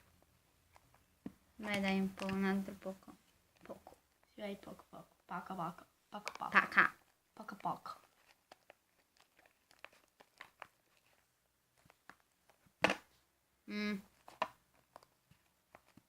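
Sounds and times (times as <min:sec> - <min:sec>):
slime stirred with wet clicks: 0:08.2 - 0:11.2.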